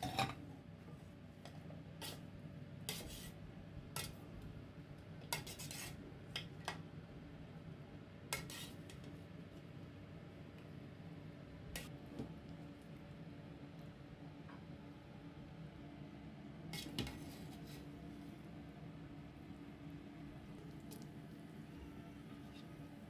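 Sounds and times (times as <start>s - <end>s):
metal spoon scraping a pot: 5.3s - 6.0s, 8.4s - 8.8s.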